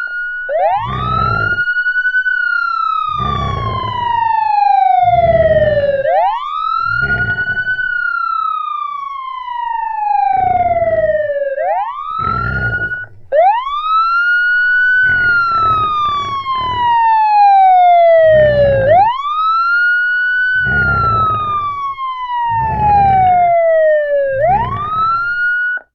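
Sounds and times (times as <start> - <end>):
police siren wailing: 0.0 - 25.9
pig grunts and oinks: 0.7 - 1.7, 3.1 - 4.4, 5.0 - 6.2, 6.8 - 7.8, 12.1 - 13.4, 15.0 - 17.0, 18.2 - 19.1, 20.6 - 21.8, 22.5 - 23.7.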